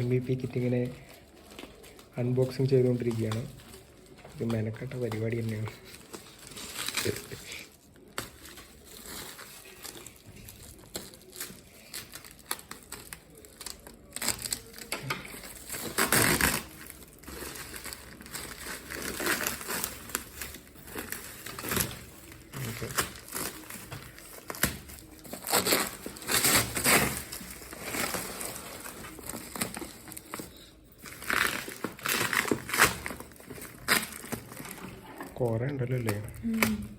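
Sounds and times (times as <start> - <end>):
packing material crinkling: 0.0 - 36.9.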